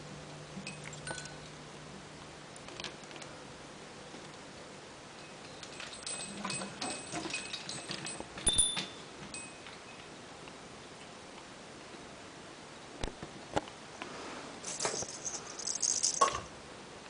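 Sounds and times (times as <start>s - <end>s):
high tinkling notes: 14.6s - 16.3s.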